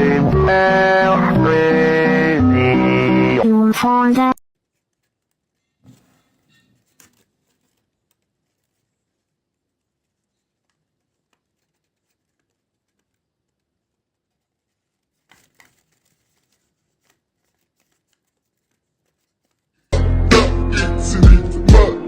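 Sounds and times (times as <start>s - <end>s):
loud music with heavy bass: 20.0s - 22.0s.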